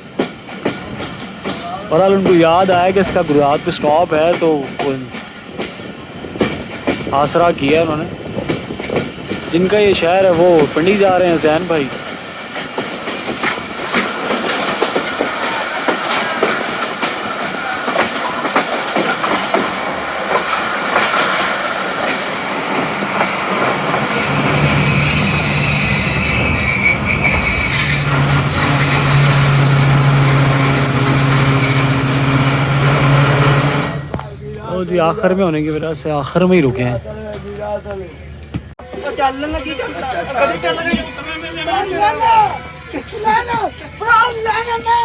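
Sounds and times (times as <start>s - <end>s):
train wheels clicking over rail joints: 0.0s - 34.5s
wheels and brakes squealing: 22.2s - 34.2s.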